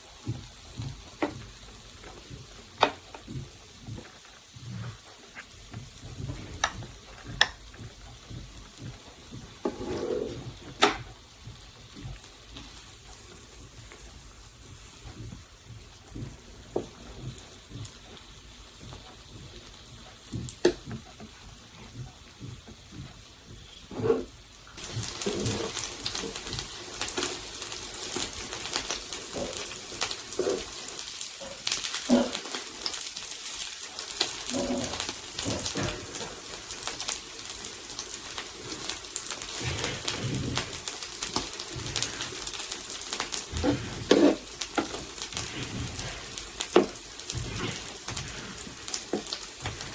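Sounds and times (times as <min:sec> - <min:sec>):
food frying in a pan: 0:00.0 - 0:49.9.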